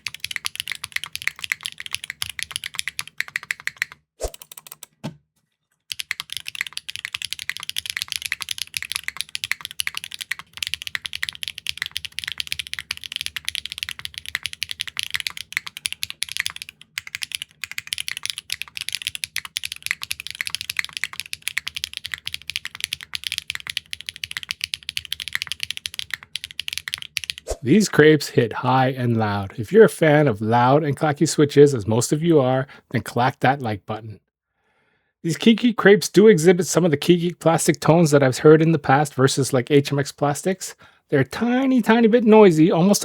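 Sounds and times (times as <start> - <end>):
mechanical keyboard typing: 0.0 - 5.1, 5.9 - 27.5.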